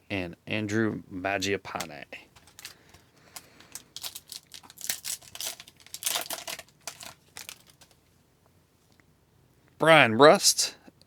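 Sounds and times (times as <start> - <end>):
wrapper tearing and crinkling: 2.3 - 8.0.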